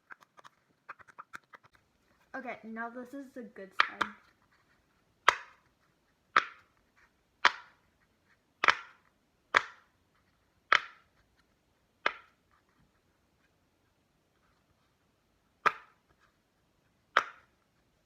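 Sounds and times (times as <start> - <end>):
fidget toy pops: 3.8 - 4.3, 5.2 - 5.6, 6.3 - 6.7, 7.4 - 7.8, 8.6 - 9.9, 10.7 - 11.1, 15.6 - 16.0, 17.1 - 17.5.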